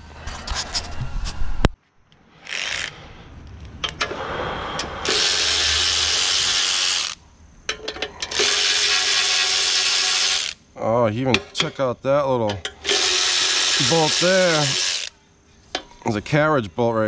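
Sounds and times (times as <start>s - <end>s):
power wrench running: 2.4s - 3.0s, 5.0s - 7.2s, 8.2s - 10.6s, 12.6s - 15.1s.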